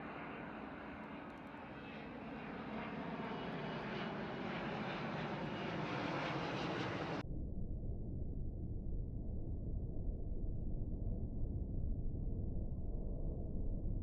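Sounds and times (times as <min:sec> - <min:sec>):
jet engines roaring: 0:00.0 - 0:07.2.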